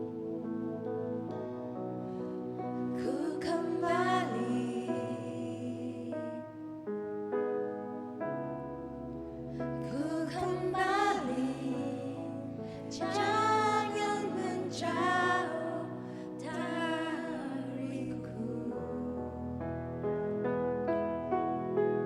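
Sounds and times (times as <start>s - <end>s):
sustained keyboard chords: 0.0s - 22.0s
person singing: 2.8s - 6.6s, 9.8s - 19.6s.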